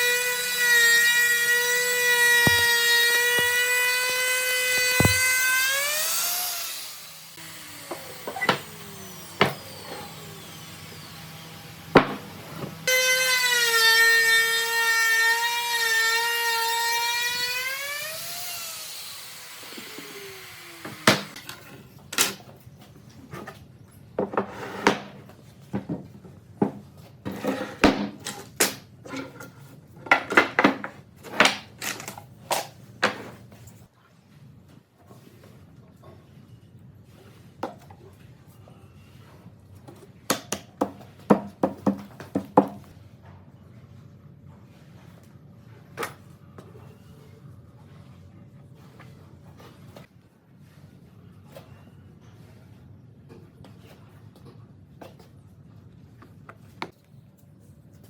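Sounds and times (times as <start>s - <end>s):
electric power tool motor: 0.0s - 14.9s, 15.7s - 21.4s.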